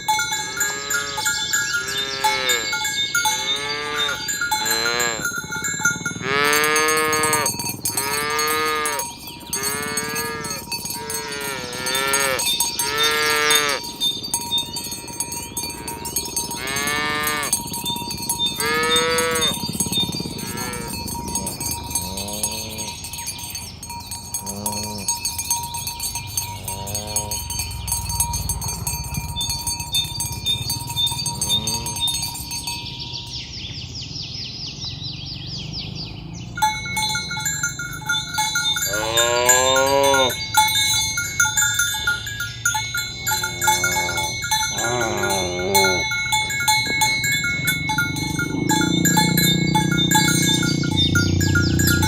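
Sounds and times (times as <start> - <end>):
high ringing tones: 0.0 - 33.7, 36.6 - 52.0
cattle mooing: 0.5 - 13.9, 15.0 - 17.7, 18.4 - 23.1, 24.3 - 25.2, 26.6 - 27.6, 30.6 - 32.2, 38.6 - 41.0, 43.3 - 52.0.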